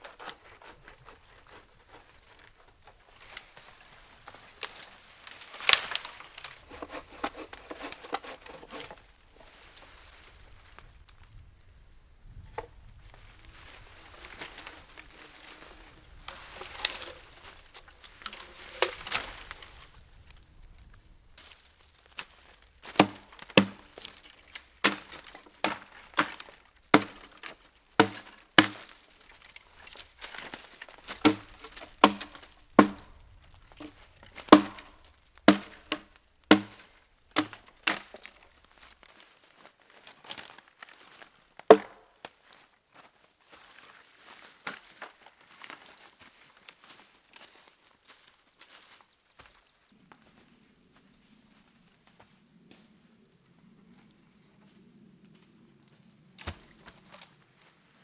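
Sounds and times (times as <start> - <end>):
rustling and crunching: 0.0 - 11.4, 12.4 - 49.6
axe chopping wood: 22.9 - 29.0, 30.3 - 33.2, 33.8 - 38.2, 41.7 - 42.0.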